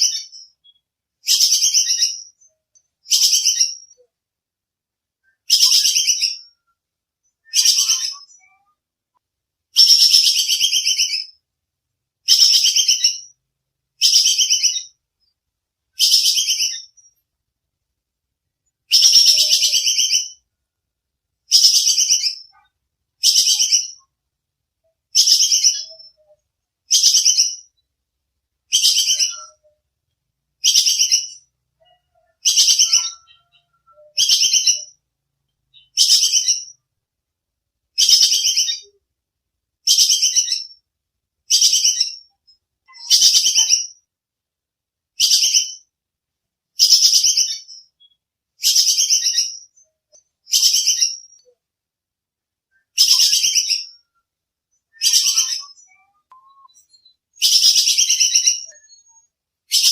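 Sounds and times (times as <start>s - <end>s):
squirrel chattering trill: 18.9s - 20.4s.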